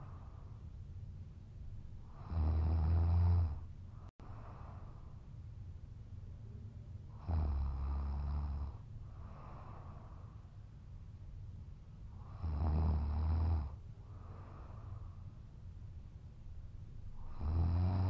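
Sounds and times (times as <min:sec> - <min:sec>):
quiet breaths: 0:00.0 - 0:18.0
heavy snoring: 0:02.2 - 0:03.6, 0:07.2 - 0:08.8, 0:12.2 - 0:13.8, 0:17.2 - 0:18.0.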